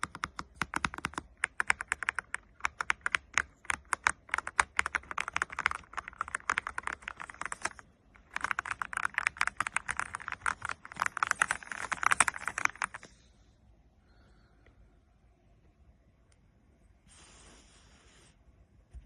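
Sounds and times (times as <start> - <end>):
typing on mechanical keyboard: 0.0 - 13.1.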